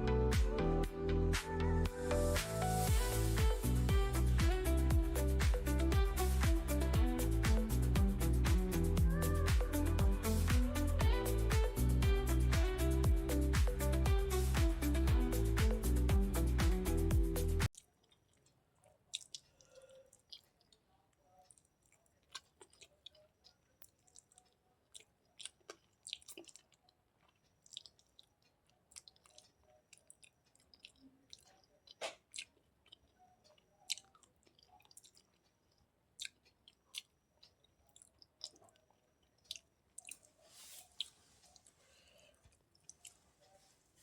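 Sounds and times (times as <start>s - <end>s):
person chewing food: 2.9s - 43.6s
mouth clicks and smacks: 17.6s - 41.8s.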